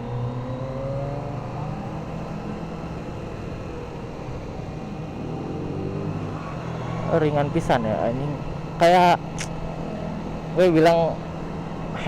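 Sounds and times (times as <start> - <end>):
motorcycle engine revving: 0.0 - 11.9.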